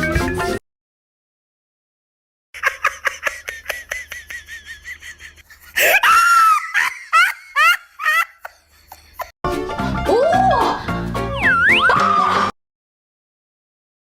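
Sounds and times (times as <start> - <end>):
high-pitched laughter: 2.6 - 9.3.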